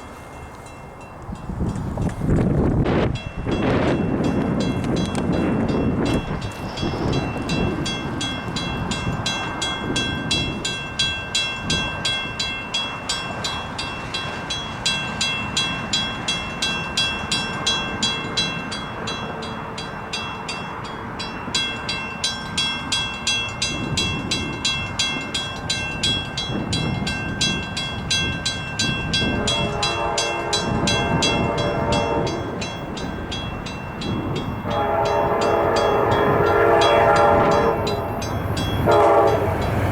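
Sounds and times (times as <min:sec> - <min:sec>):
crossing bell ringing: 0:00.0 - 0:02.3, 0:02.9 - 0:39.9
train horn chord: 0:29.2 - 0:32.8, 0:34.6 - 0:39.8.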